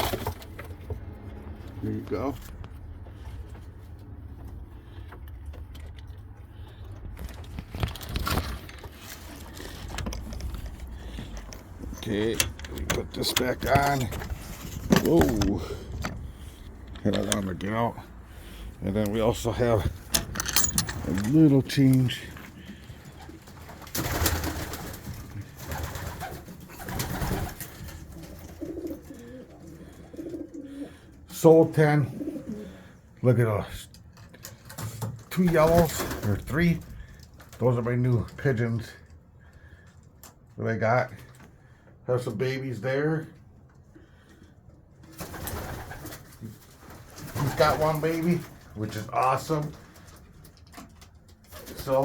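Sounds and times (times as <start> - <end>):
rustling and knocking: 7.1 - 17.5
metallic rattling: 19.8 - 22.2
pigeons cooing: 22.4 - 31.3, 32.0 - 33.1.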